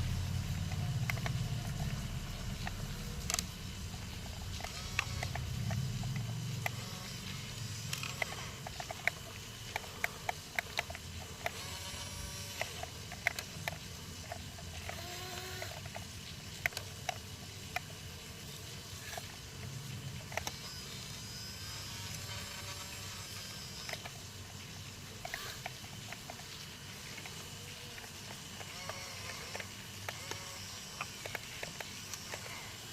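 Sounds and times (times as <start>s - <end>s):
sharp clicks and taps: 0.0s - 11.7s
small electric motors whirring: 0.0s - 32.9s.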